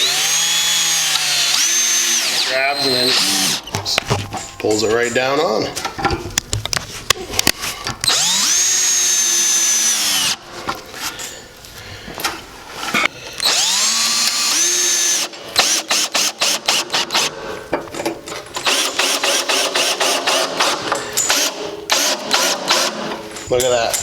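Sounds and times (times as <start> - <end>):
drill clicking: 0.0 - 3.7, 8.0 - 10.4, 13.4 - 17.3, 18.6 - 23.2
power drill whining: 0.0 - 3.8, 8.0 - 10.4, 13.4 - 17.3, 18.6 - 23.1.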